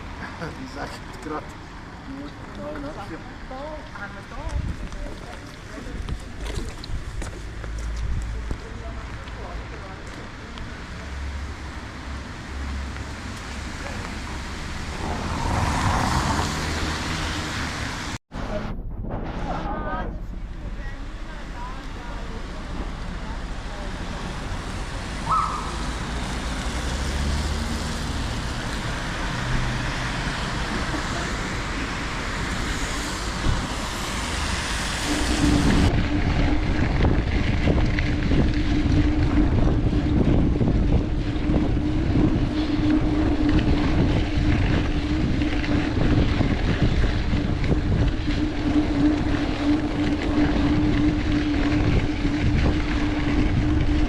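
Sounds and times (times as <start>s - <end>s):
heavy low rumble: 0.0s - 26.6s, 27.8s - 54.0s
wind rushing over microphone: 2.6s - 9.7s, 10.6s - 54.0s
steady hum: 34.9s - 54.0s.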